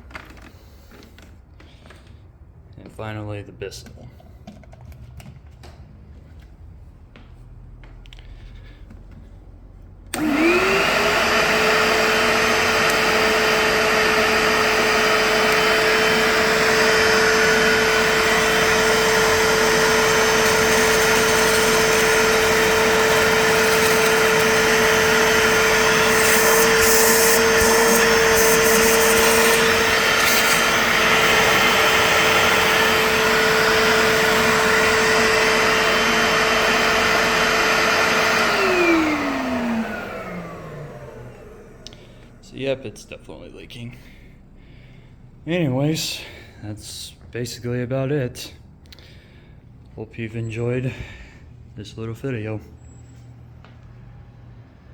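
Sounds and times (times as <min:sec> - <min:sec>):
carpet cleaner motor whine: 0:10.1 - 0:42.4.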